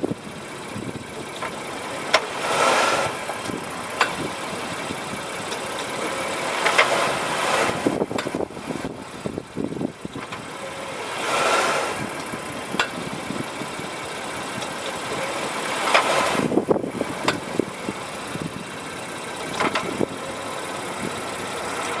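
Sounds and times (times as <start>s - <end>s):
car engine idling: 0.0s - 22.0s
rushing noise: 2.2s - 5.1s, 6.0s - 9.0s
clicks and knocks: 19.5s - 20.0s.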